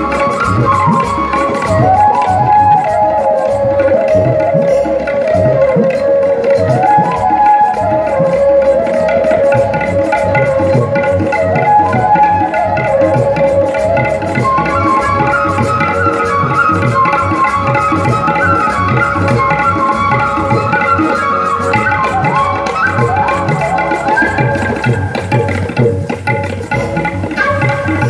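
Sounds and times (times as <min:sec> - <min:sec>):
gliding held-note melody: 0:00.0 - 0:28.0
fast steady drum beat: 0:09.5 - 0:28.0.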